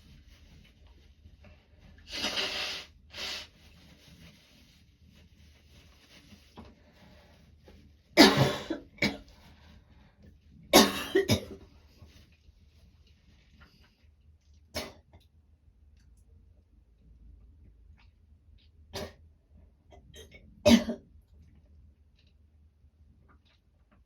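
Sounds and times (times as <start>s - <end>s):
woman coughing: 8.2s - 9.2s, 10.8s - 11.6s, 20.7s - 21.0s.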